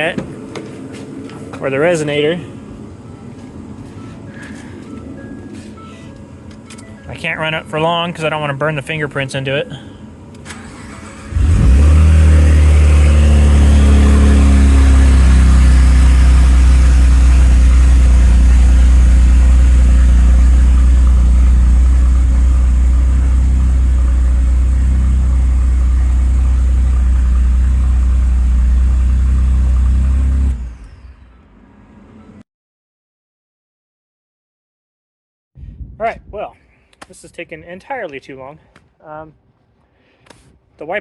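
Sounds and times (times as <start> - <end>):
loud truck engine idling: 12.0 - 30.5.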